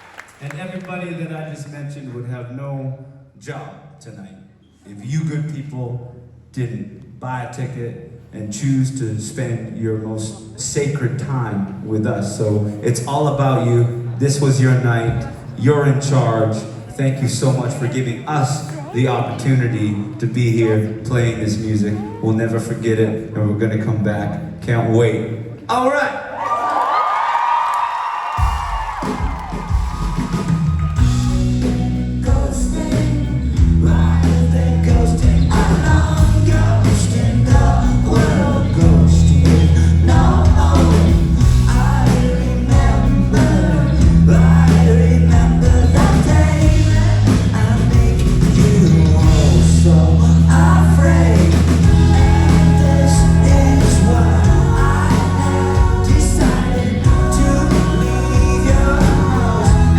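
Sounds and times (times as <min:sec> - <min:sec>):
heavy bass: 0:28.4 - 0:59.9
live rock band playing: 0:28.4 - 0:59.9
person singing: 0:30.6 - 0:59.9.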